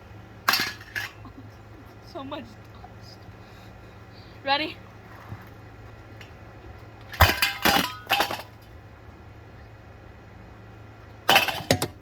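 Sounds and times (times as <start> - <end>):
metal crash: 0.4 - 1.2, 7.1 - 8.6, 11.3 - 12.0
metal clanging impacts: 0.4 - 1.4, 7.0 - 8.8, 11.2 - 12.0.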